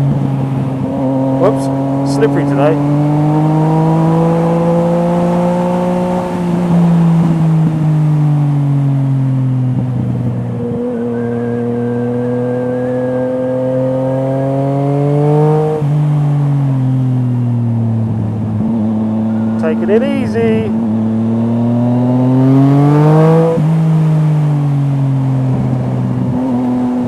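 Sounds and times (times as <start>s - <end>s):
motorcycle engine revving: 0.0s - 8.3s, 20.7s - 24.5s.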